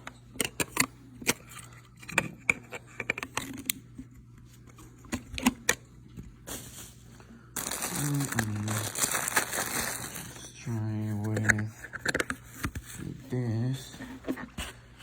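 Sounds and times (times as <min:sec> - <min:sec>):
plastic parts clicking and knocking: 0:11.3 - 0:12.8.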